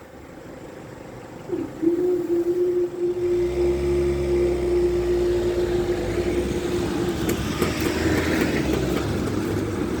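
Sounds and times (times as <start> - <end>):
vehicle engines running: 2.7 - 10.0.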